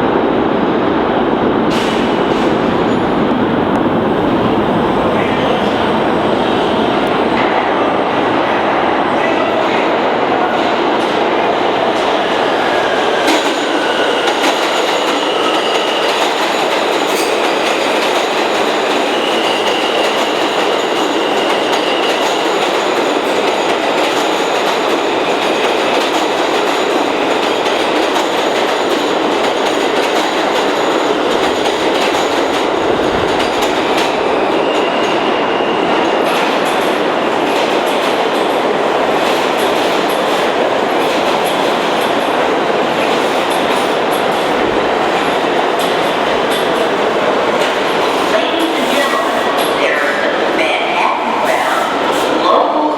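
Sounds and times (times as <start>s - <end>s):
subway train wheels rumbling: 0.0s - 52.9s.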